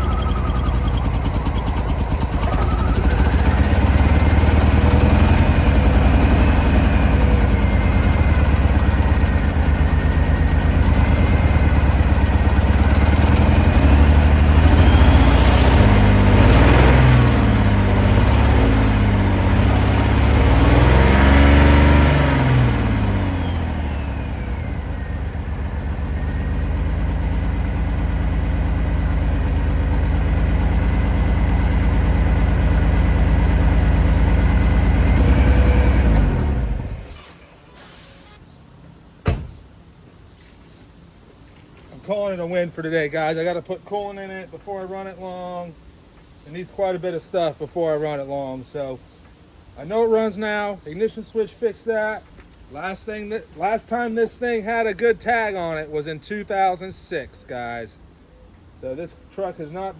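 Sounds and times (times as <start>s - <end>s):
truck engine revving and idling: 0.0s - 37.6s.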